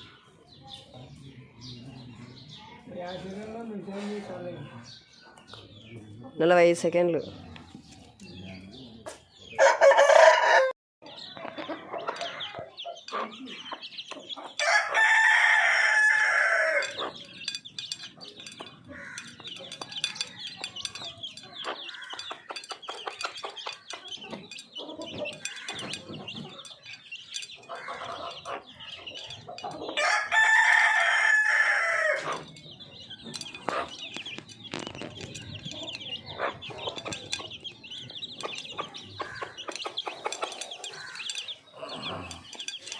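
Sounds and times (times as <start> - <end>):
chickens clucking: 0.0 - 42.9
rooster crowing: 9.6 - 10.8, 14.6 - 17.0, 30.0 - 32.2.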